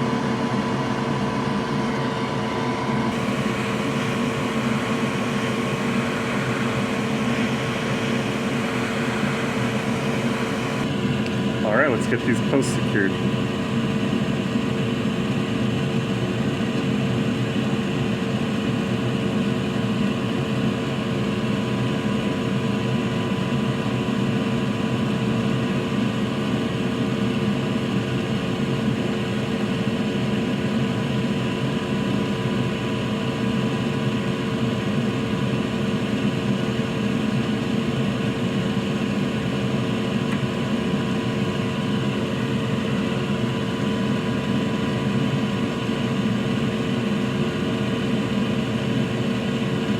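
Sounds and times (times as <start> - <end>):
fan whirring: 0.0 - 18.1
constant hum: 0.0 - 20.4.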